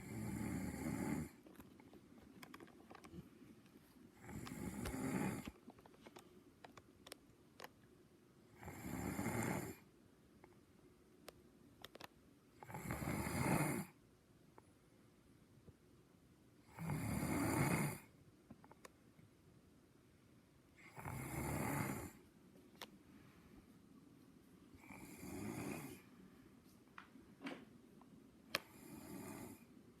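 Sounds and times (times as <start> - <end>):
person snoring: 0.0 - 1.4, 4.2 - 5.6, 8.6 - 9.8, 12.6 - 14.0, 16.7 - 18.1, 20.8 - 22.2, 24.8 - 26.1, 28.6 - 29.7.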